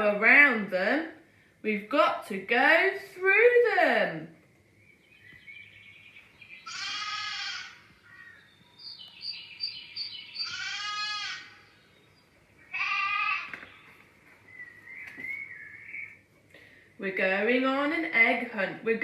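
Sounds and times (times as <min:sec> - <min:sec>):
faint bird chirps: 0:04.7 - 0:12.8, 0:13.4 - 0:16.3
lambs bleating: 0:06.6 - 0:07.9, 0:10.4 - 0:11.6, 0:12.7 - 0:13.6.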